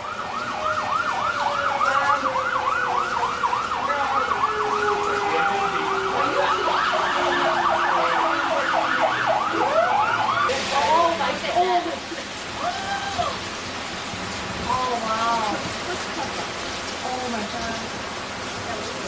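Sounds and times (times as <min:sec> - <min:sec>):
low siren tone sliding down: 0:00.0 - 0:10.5
siren fast yelp: 0:00.0 - 0:10.5
rising siren wail: 0:00.0 - 0:11.3.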